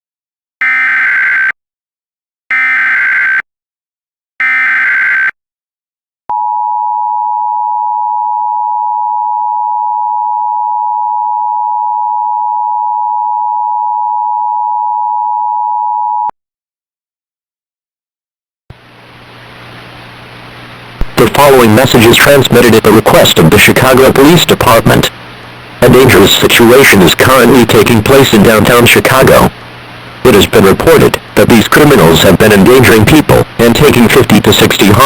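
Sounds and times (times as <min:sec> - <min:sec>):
digital data screech: 0:00.6 - 0:01.6, 0:04.4 - 0:05.3
steady attention tone: 0:06.3 - 0:16.3.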